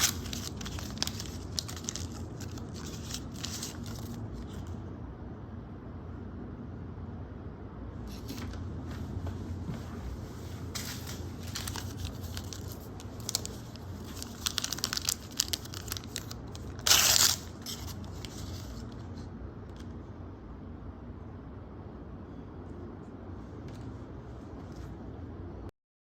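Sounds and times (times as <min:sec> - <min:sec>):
packaging crinkling and tearing: 0:00.0 - 0:04.7, 0:10.8 - 0:19.1.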